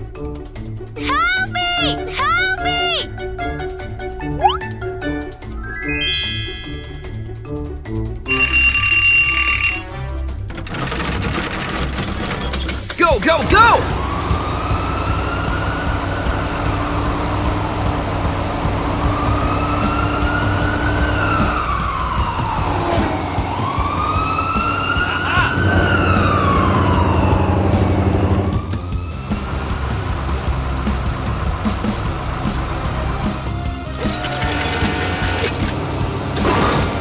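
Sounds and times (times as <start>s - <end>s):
engine rumble: 12.9s - 37.0s
siren wailing: 13.3s - 17.7s, 18.9s - 29.4s.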